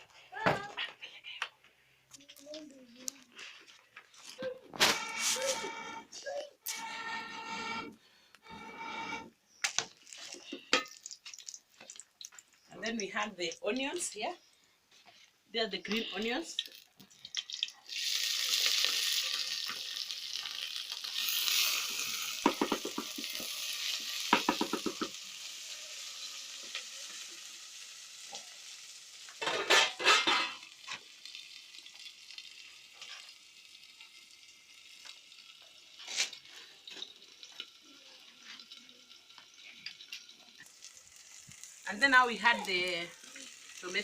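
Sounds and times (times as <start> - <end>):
green onions sizzling in a pan: 9.5 - 12.4, 15.9 - 44.0
spoon stirring and knocking pan: 22.4 - 25.2.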